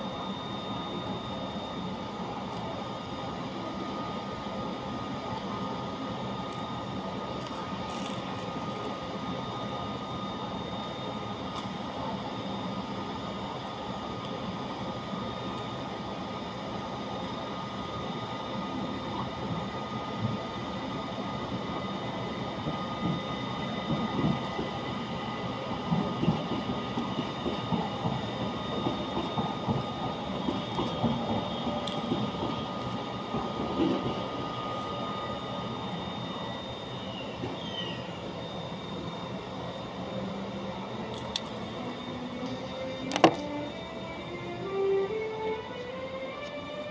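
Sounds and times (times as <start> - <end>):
train whining: 19.4 - 46.9.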